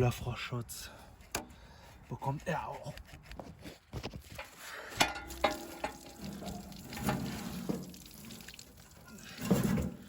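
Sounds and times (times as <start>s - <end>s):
water pouring and dripping: 4.3s - 10.0s.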